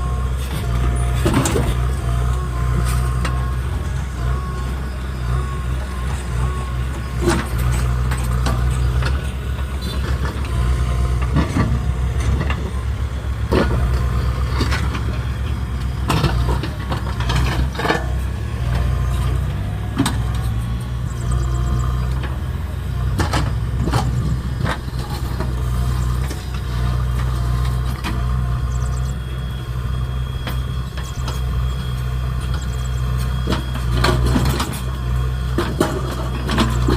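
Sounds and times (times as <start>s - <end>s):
diesel engine running: 0.0s - 36.9s.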